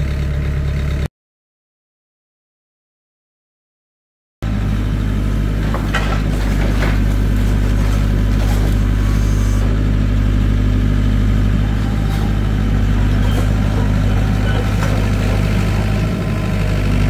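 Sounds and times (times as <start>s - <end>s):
engine running: 0.0s - 1.1s, 4.4s - 17.0s.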